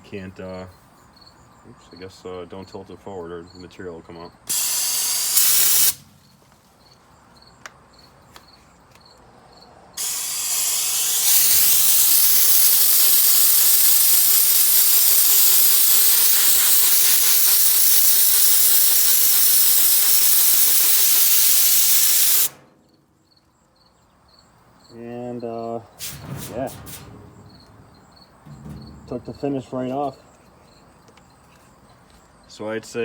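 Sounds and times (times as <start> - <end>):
sandblast gun hissing: 4.5 - 6.2, 10.0 - 22.7, 25.9 - 29.6.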